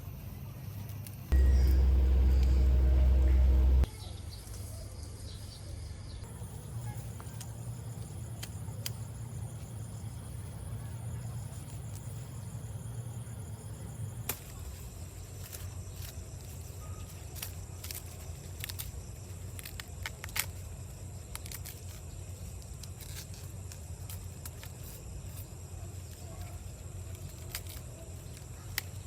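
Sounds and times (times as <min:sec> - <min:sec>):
steady low rumble: 0:01.3 - 0:03.9, 0:06.2 - 0:14.8
faint high insect-like tones: 0:04.4 - 0:29.0.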